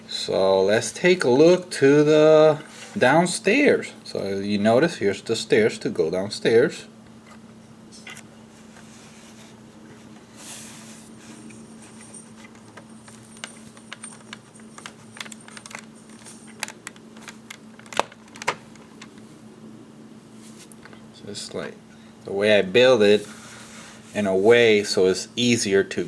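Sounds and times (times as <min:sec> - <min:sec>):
faint steady hum: 0:00.0 - 0:26.0
plastic bricks rustling: 0:12.4 - 0:19.1.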